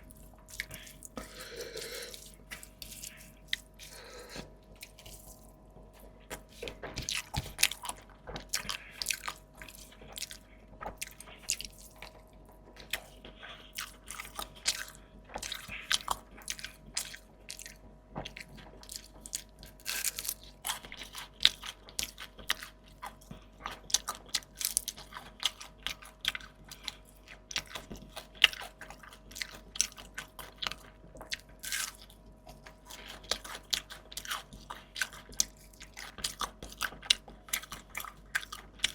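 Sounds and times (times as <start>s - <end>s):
person chewing crunchy food: 0.0s - 38.9s.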